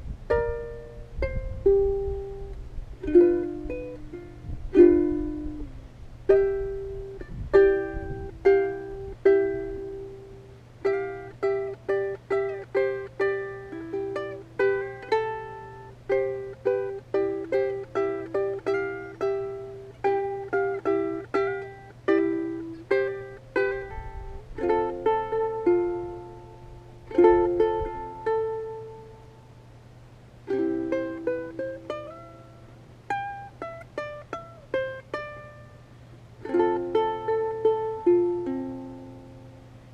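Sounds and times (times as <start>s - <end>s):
faint low hum: 0.0s - 39.9s
plucked string melody: 0.0s - 39.9s.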